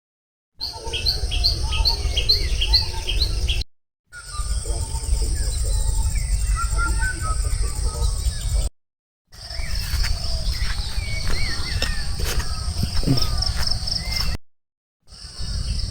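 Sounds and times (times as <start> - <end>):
birds chirping and whistling: 0.6 - 8.7, 9.4 - 14.4
repeated bird call: 9.4 - 14.4.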